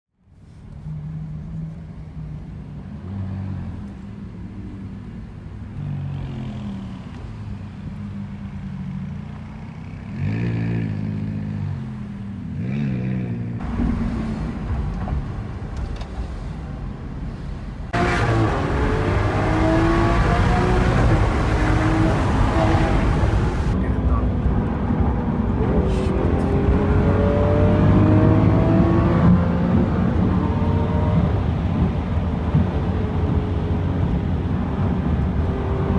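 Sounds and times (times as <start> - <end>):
car engine idling unevenly: 13.6 - 24.2
engine revving: 17.9 - 23.8, 25.7 - 31.2.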